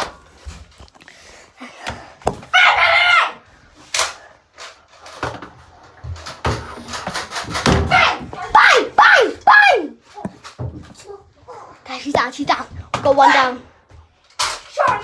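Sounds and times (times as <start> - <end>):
child shrieking: 2.5 - 3.4.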